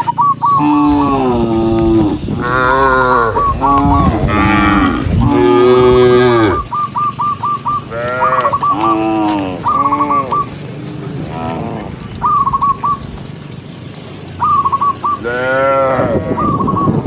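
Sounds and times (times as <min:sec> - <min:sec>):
cows mooing: 0:00.5 - 0:06.9, 0:07.7 - 0:12.8, 0:14.5 - 0:16.6.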